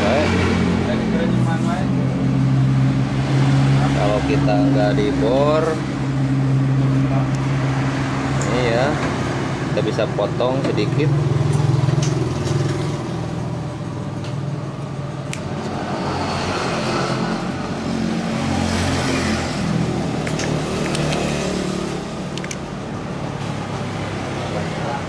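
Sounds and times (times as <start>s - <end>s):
vehicle engines passing: 0.0s - 25.0s.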